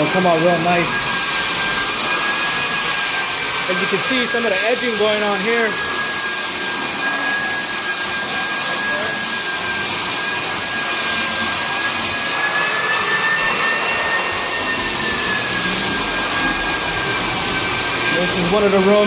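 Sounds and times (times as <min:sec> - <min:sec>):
floor sander running: 0:00.0 - 0:19.0.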